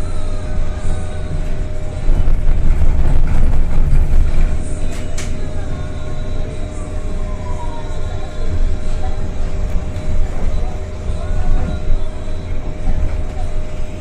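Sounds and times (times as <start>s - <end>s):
bus motor whine: 0.0s - 14.0s
electric bus rumble: 0.0s - 14.0s.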